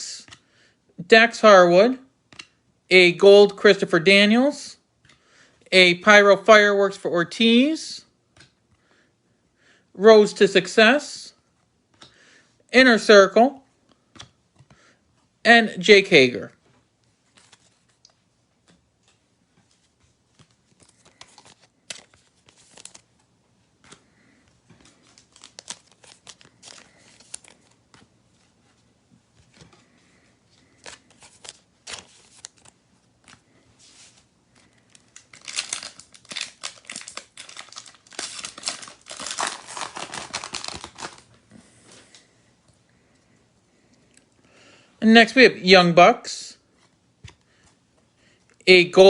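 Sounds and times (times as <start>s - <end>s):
cards rustling and clicking: 2.3s - 2.6s, 13.8s - 15.3s, 17.0s - 42.8s
plastic wrapper crinkling and tearing: 20.7s - 23.1s, 24.8s - 28.0s, 30.6s - 33.4s, 34.6s - 41.4s.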